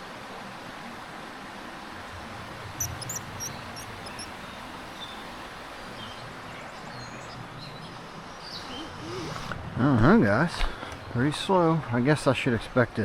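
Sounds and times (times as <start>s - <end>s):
creek water rushing: 0.0s - 13.0s
high thin bird chirps: 2.8s - 4.4s.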